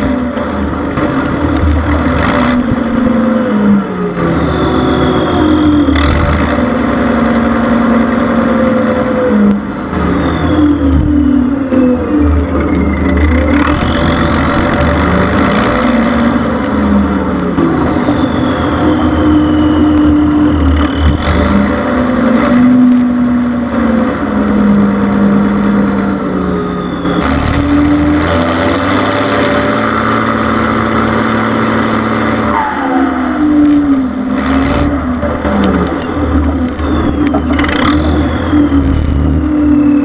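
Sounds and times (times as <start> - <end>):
diesel tractor engine revving: 0.0 - 40.0
turbo whistle: 16.8 - 21.6, 32.4 - 34.2, 35.6 - 40.0.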